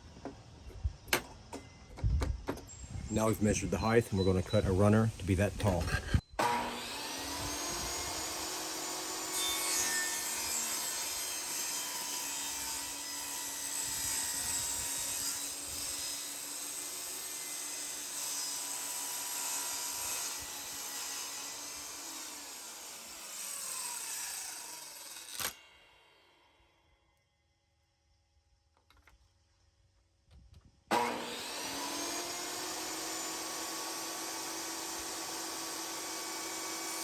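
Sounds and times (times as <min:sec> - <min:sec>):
table saw ripping wood: 0:05.6 - 0:25.7, 0:30.9 - 0:37.0
saw blade spinning down: 0:30.9 - 0:37.0.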